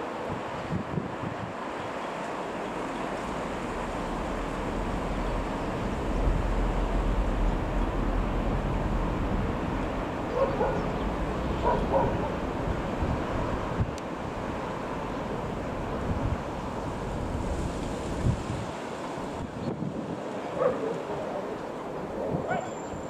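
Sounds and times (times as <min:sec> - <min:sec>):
wind buffeting microphone: 0:00.3 - 0:20.3
dog barking: 0:10.3 - 0:11.0, 0:11.6 - 0:12.4, 0:20.6 - 0:21.0, 0:22.4 - 0:22.8.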